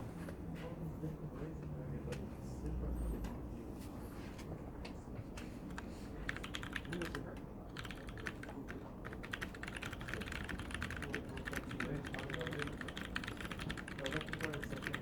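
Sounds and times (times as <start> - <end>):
mechanical keyboard typing: 5.7 - 15.0.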